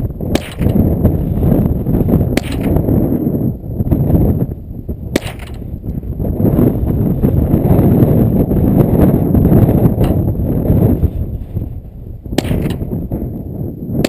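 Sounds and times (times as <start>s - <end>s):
rifle shots cracking: 0.0s - 1.4s, 2.3s - 3.1s, 5.1s - 5.8s, 12.3s - 13.1s
wind rumble on microphone: 0.0s - 14.0s.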